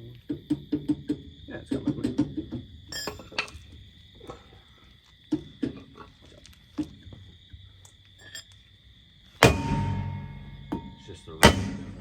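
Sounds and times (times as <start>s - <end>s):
insects trilling: 0.0s - 12.0s
light metal knocks: 9.4s - 12.0s.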